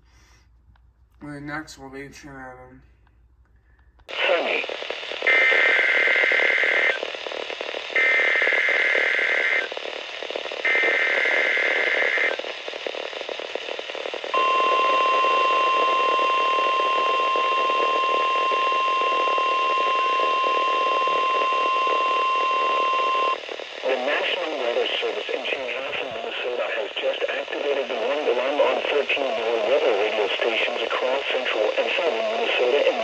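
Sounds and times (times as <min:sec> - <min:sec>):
radio hiss: 0:04.0 - 0:33.0
steady alarm tone: 0:14.3 - 0:23.4.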